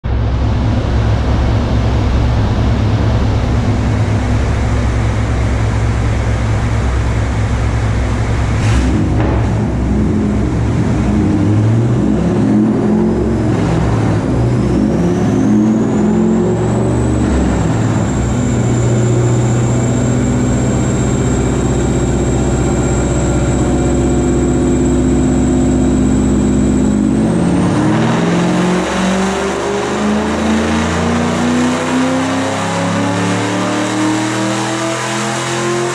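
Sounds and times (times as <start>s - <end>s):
car engine revving loud: 8.1s - 35.9s.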